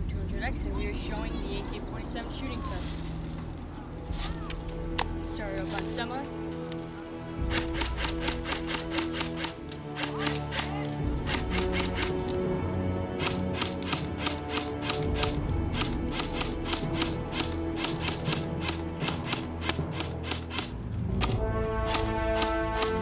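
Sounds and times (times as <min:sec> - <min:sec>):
music: 0:00.0 - 0:23.0.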